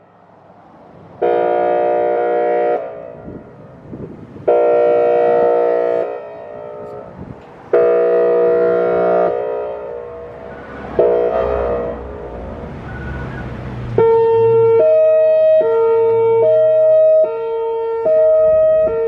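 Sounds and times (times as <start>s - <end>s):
warning siren airhorn blasts: 1.2s - 19.0s
siren echoes: 4.4s - 19.0s.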